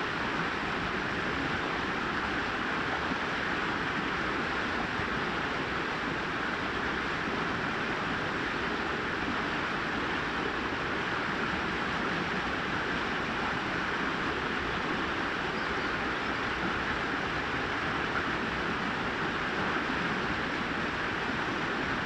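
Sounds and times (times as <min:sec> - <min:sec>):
brook water over rocks: 0:00.0 - 0:22.0.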